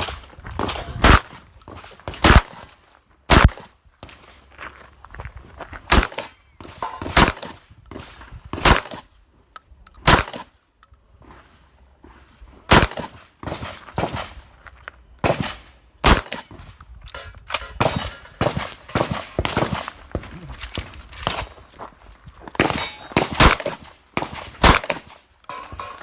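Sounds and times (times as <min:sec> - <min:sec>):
shotgun shots: 0:00.0 - 0:03.7, 0:05.9 - 0:09.1, 0:10.0 - 0:10.6, 0:12.7 - 0:14.4, 0:15.2 - 0:16.8, 0:17.6 - 0:21.5, 0:22.6 - 0:26.0
knocks and clatter: 0:25.5 - 0:26.0.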